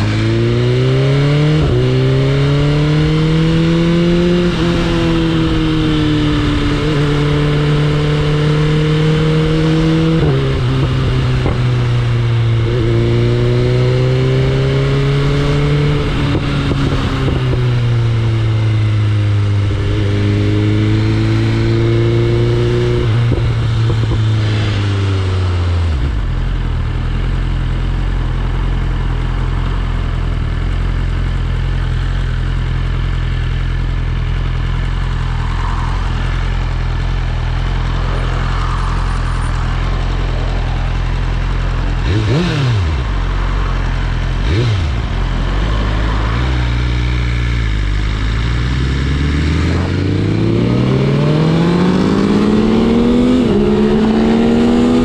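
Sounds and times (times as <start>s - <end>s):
motorcycle engine revving: 0.0s - 55.0s
motorcycle engine idling: 25.8s - 49.3s.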